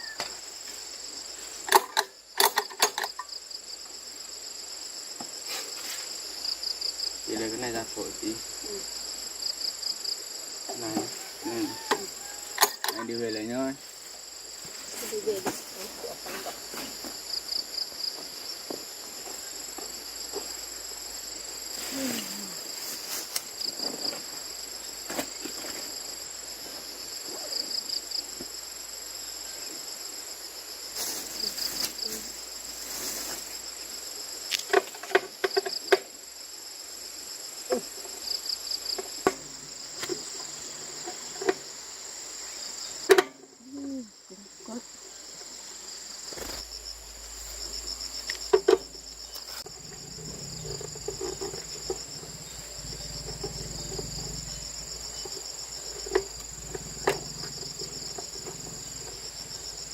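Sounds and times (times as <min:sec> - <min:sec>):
insect chirp bursts: 0:00.0 - 0:59.9
insects trilling: 0:00.0 - 0:59.9.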